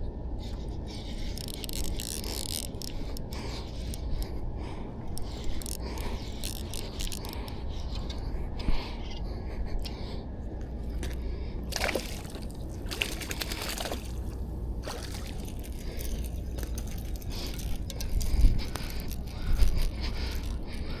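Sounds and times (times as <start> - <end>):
water splashing and sloshing: 10.7 - 21.0.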